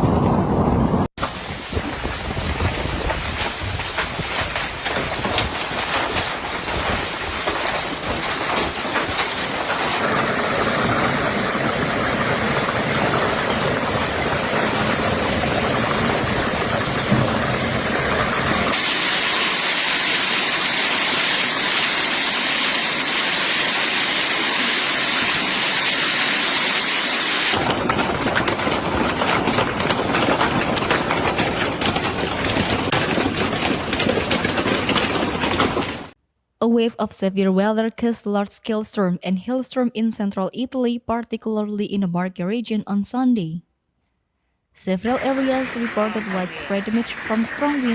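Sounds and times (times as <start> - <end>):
heavy rain downpour: 1.2 - 36.1, 45.0 - 47.9.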